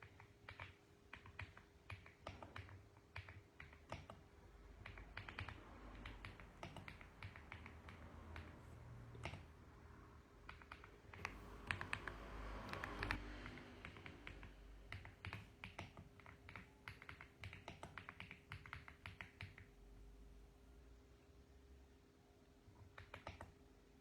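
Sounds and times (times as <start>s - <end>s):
mechanical keyboard keys clacking: 0.0s - 8.6s, 10.5s - 19.7s.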